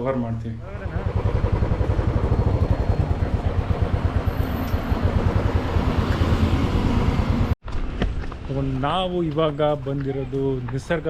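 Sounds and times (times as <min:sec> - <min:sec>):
motorcycle engine running: 0:00.6 - 0:07.6.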